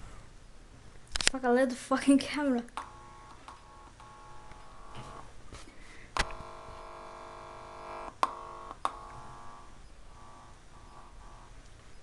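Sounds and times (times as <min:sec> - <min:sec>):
electrical buzz from speakers: 0:02.6 - 0:12.0
sharp clicks: 0:06.2 - 0:06.6, 0:08.0 - 0:09.2.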